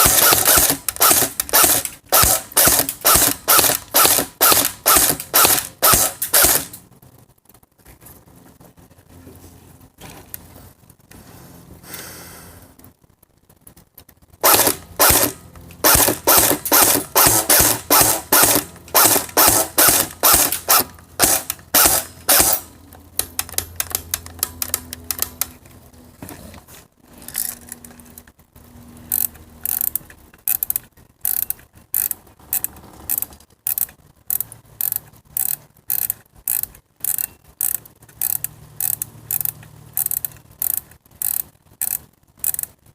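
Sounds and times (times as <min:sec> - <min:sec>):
air rifle mechanism clicking: 0:00.0 - 0:06.8, 0:14.4 - 0:25.6.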